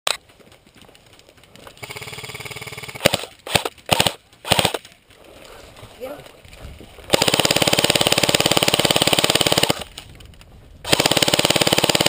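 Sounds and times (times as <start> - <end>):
airsoft gun firing bursts: 1.8 - 4.8, 7.1 - 9.9, 10.8 - 12.0.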